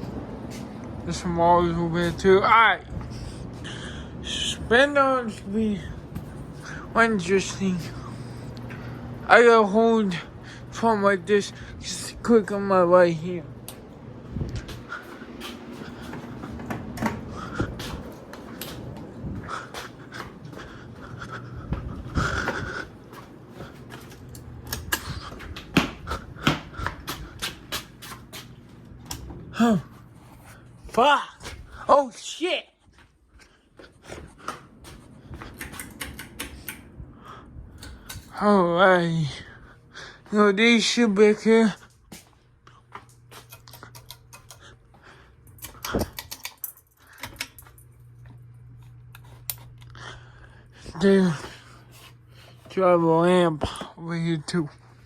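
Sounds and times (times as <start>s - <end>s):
ceiling fans humming: 0.0s - 55.0s
sharp clicks and knocks: 35.4s - 36.9s.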